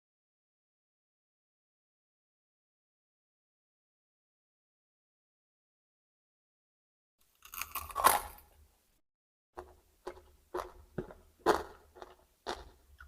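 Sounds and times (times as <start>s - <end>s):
crunchy chewing: 7.4s - 8.5s, 9.6s - 13.0s
crunchy bite into vegetable: 7.4s - 8.6s, 9.6s - 13.0s.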